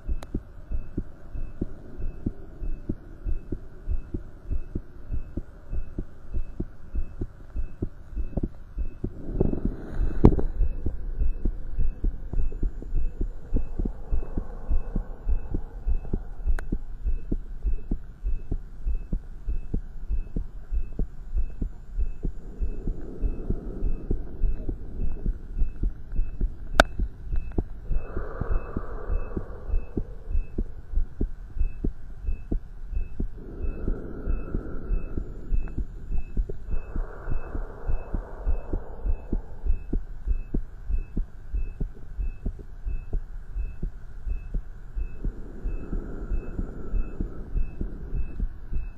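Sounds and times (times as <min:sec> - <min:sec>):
faint high beep: 0:00.0 - 0:48.9
fast heartbeat: 0:00.0 - 0:48.9
rushing noise: 0:33.4 - 0:40.2.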